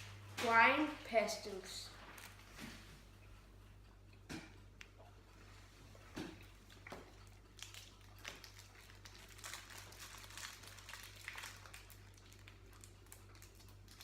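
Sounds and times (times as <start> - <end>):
candy wrapper crinkling: 7.2 - 14.0.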